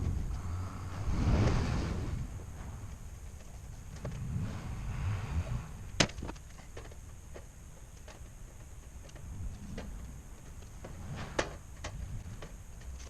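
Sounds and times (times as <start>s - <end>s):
low rumble: 0.0s - 6.4s.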